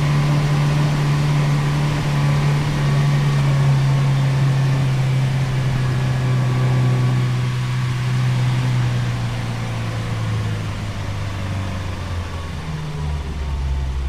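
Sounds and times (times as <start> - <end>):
vehicle engine slowing down: 0.0 - 14.0.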